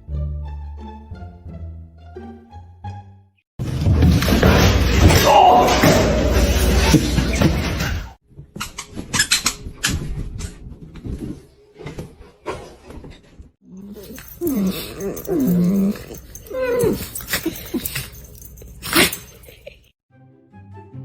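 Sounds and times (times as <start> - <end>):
dog whining: 13.7 - 19.8.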